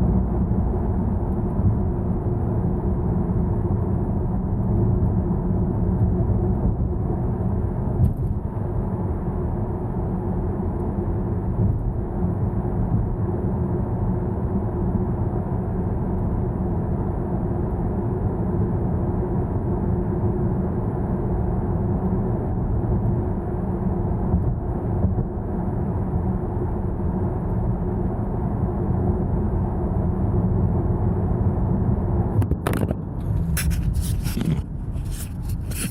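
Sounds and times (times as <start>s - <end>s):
road and tyre rumble: 0.0s - 35.9s
wind noise: 31.0s - 35.9s
brief rustling scrapes: 33.2s - 35.9s.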